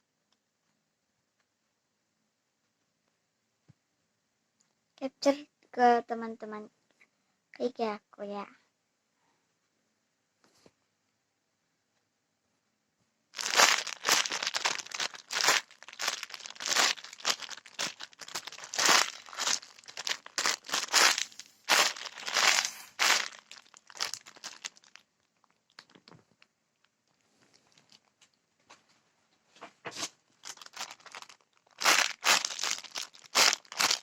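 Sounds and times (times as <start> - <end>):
plastic wrapping crinkling: 13.4 - 26.2, 27.4 - 28.2, 30.0 - 34.0.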